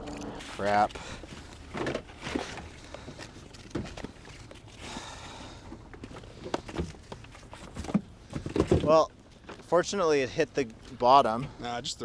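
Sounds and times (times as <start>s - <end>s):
gear and rope rustling: 0.0s - 8.9s
light knocks and thumps: 5.9s - 9.7s.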